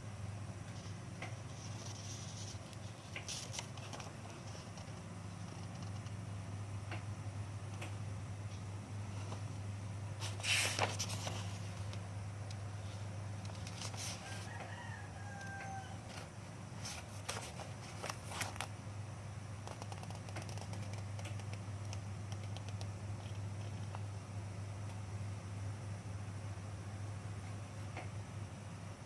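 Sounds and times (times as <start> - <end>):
steady low hum: 0.0 - 29.0
faint rooster crowing: 13.8 - 16.3.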